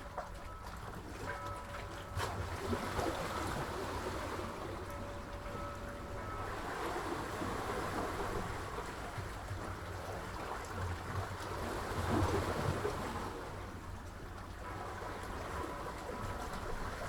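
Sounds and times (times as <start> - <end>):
sea waves washing: 1.4 - 9.7.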